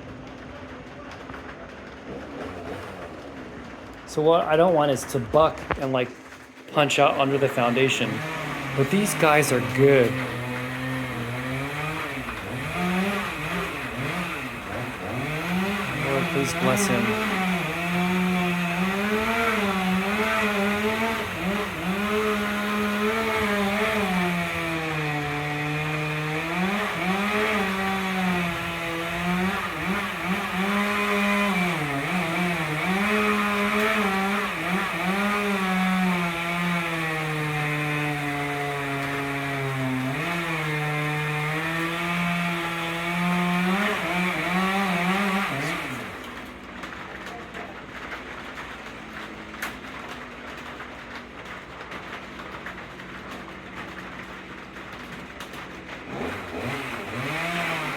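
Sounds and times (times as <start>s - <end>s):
chainsaw cutting wood: 2.1s - 57.9s.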